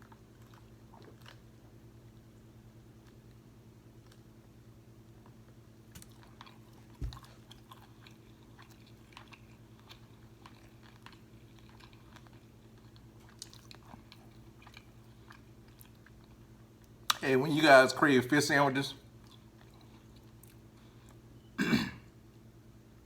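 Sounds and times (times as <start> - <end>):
chewing crispy fried food: 0.0 - 17.2, 19.0 - 21.4
steady low hum: 0.0 - 23.0
dull thump: 7.0 - 7.3.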